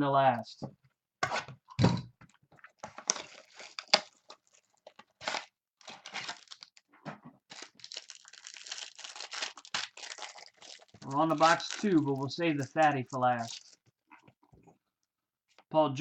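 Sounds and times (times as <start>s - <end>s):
wrapper crinkling and tearing: 2.9s - 6.8s, 7.5s - 13.9s
cards rustling: 7.5s - 13.9s.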